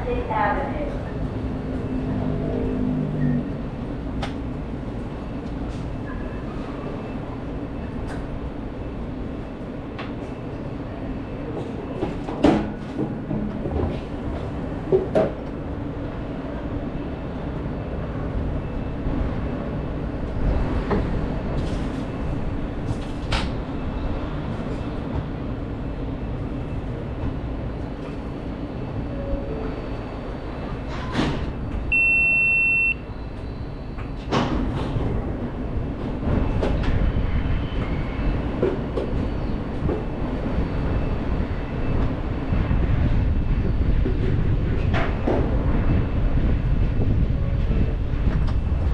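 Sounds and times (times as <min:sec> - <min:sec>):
train wheels rumbling on rail: 0:00.0 - 0:32.0, 0:32.9 - 0:48.9
high beep: 0:31.9 - 0:33.0.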